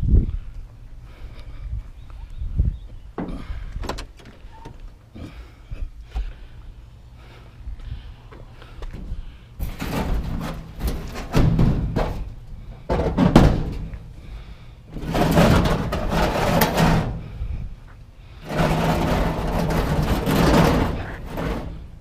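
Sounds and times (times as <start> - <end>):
heavy knocks of washing machine: 9.8 - 13.9
washing machine scraping drags: 14.9 - 17.4, 18.4 - 22.0.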